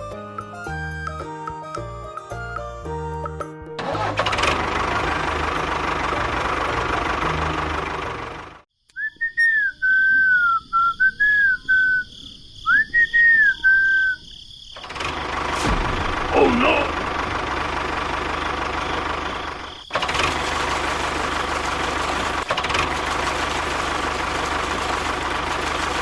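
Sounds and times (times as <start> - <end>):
whistled tune: 8.9 - 12.1, 12.7 - 14.2.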